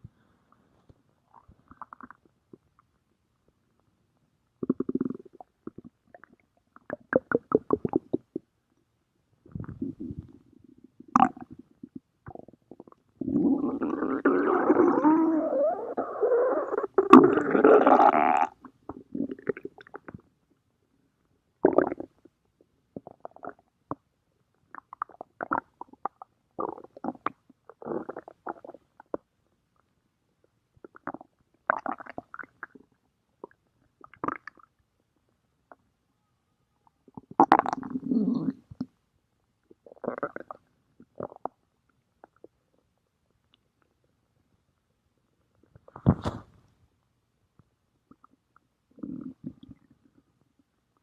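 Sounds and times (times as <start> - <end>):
stomach growling: 1.3 - 2.8, 4.6 - 8.5, 9.5 - 20.3, 24.7 - 29.3, 37.0 - 38.9, 39.7 - 41.6, 48.1 - 50.4.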